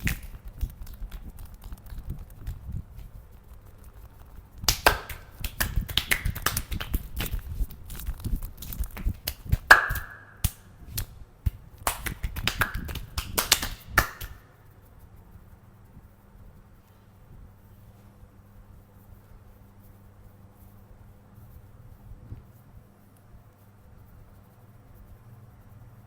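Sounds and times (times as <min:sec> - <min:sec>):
hands slapping and clapping on body: 0:00.0 - 0:02.6, 0:04.6 - 0:14.5.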